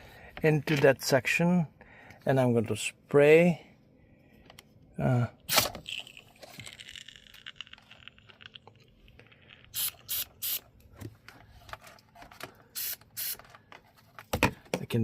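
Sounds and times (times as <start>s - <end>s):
aerosol can spraying: 9.8s - 10.6s.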